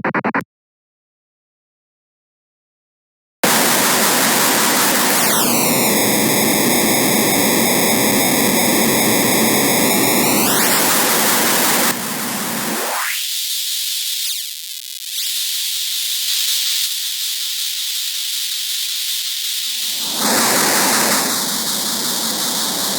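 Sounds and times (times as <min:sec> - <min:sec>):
thin high hiss: 0:12.6 - 0:22.9.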